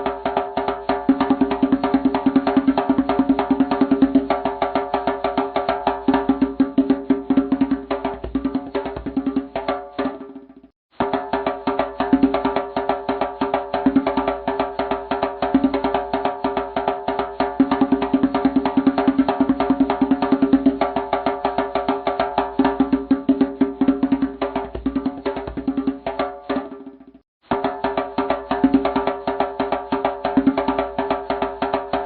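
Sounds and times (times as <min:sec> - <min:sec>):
music with fast percussive beat: 0:00.0 - 0:32.0.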